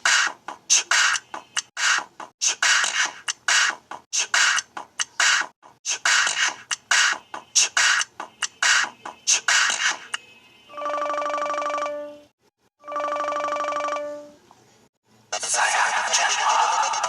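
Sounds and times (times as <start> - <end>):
electronic ringtone beat: 6.1 - 12.1, 12.8 - 14.3, 15.4 - 17.0.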